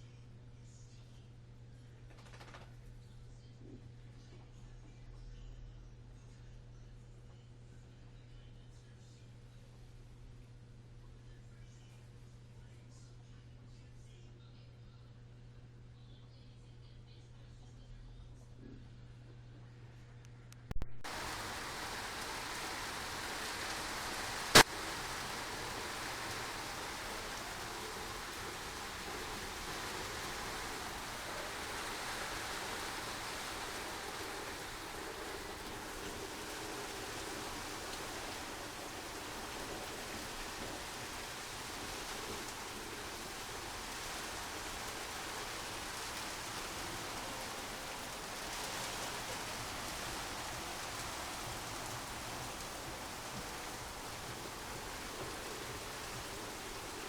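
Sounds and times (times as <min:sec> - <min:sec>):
washer-dryer running: 0:21.0 - 0:57.0
water rushing into drum: 0:21.0 - 0:57.0.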